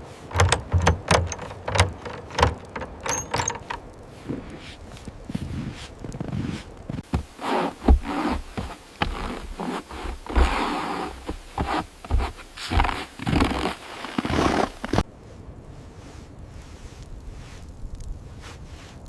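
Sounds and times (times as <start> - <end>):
scraping and rubbing strokes: 0.0 - 15.0
dull knocks: 0.3 - 3.8, 7.0 - 13.7.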